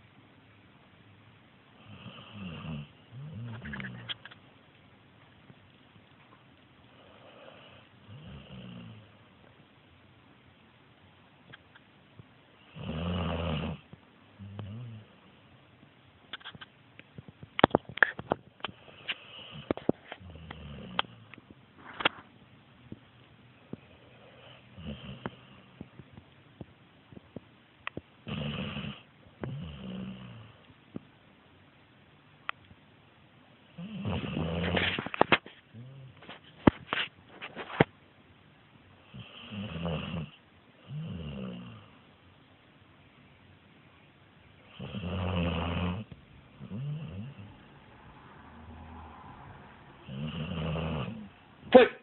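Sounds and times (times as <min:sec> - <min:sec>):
pet snoring: 0:01.8 - 0:04.2, 0:06.9 - 0:09.2, 0:12.6 - 0:15.2, 0:18.7 - 0:21.3, 0:23.9 - 0:25.8, 0:28.2 - 0:30.6, 0:33.7 - 0:35.1, 0:39.0 - 0:42.0, 0:44.6 - 0:47.7, 0:50.0 - 0:51.3.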